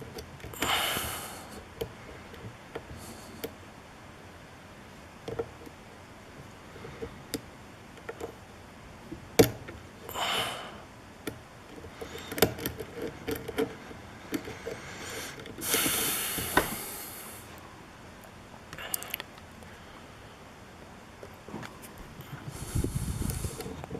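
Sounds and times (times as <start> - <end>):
short hiss: 15.0 - 17.5.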